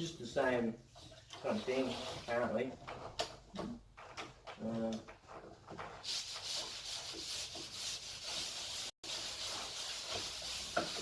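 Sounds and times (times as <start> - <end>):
door knob rubbing and scraping: 1.7 - 6.6.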